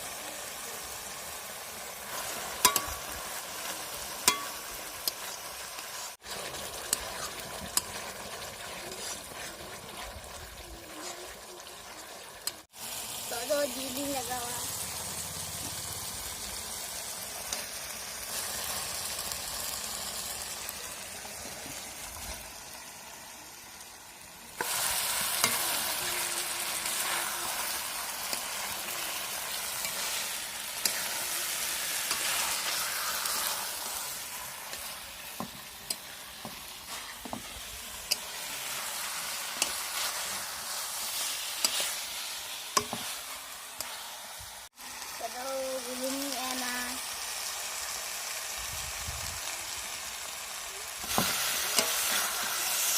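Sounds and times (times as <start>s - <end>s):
meat sizzling in a pan: 0.0s - 52.9s
utensil clicking against pan: 38.0s - 38.4s.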